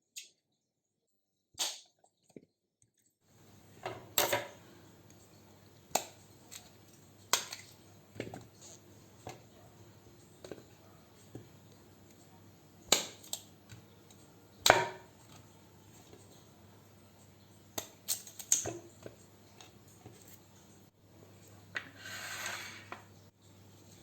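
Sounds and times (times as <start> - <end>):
kitchen utensils knocking and clinking: 3.8 - 4.6.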